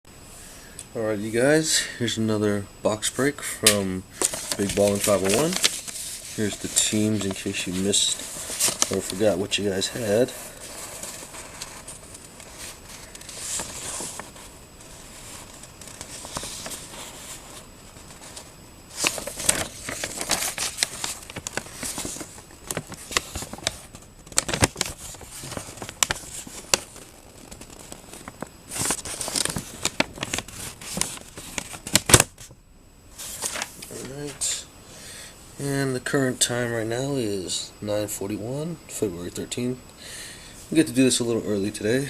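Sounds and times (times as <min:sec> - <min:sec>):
paper rustling and crinkling: 0:03.7 - 0:32.5, 0:33.1 - 0:34.6.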